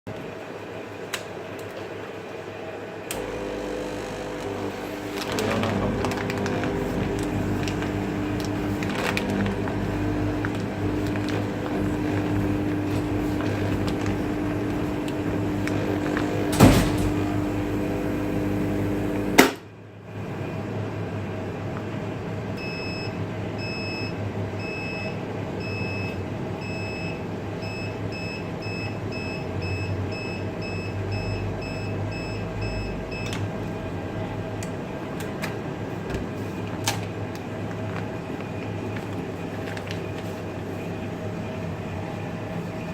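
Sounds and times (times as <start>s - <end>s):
vacuum sealer hum: 3.0s - 20.6s.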